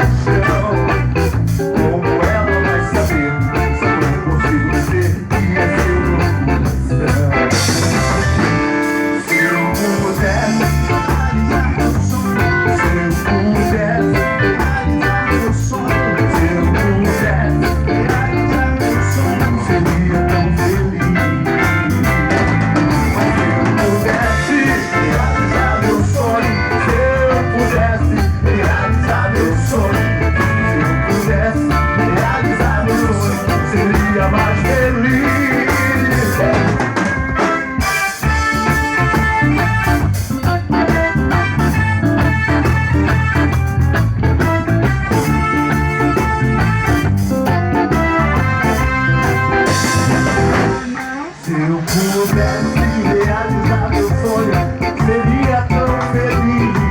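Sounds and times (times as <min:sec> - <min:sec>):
guitar: 0:00.0 - 0:56.9
live band playing: 0:00.0 - 0:56.9.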